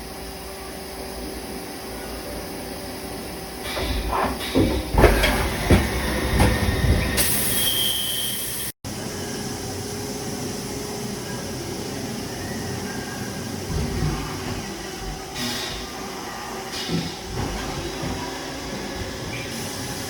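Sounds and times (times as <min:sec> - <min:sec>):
steady mechanical hum: 0:00.0 - 0:20.0
metallic clunks and knocks: 0:03.7 - 0:07.1
air hiss with whistle: 0:07.2 - 0:09.6.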